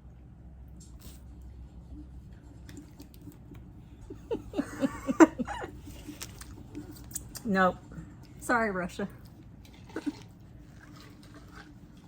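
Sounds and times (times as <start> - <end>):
person laughing: 4.0 - 5.8.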